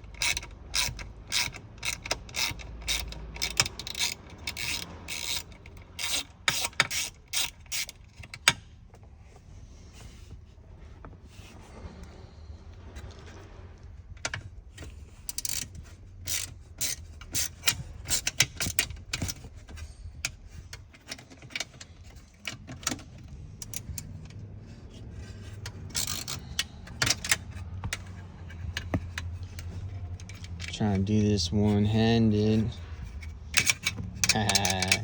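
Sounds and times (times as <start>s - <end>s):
ratchet wrench clicking: 0.0s - 8.6s, 15.2s - 19.8s, 23.6s - 24.4s, 25.2s - 30.8s, 33.2s - 35.0s
steady low hum: 7.2s - 35.0s.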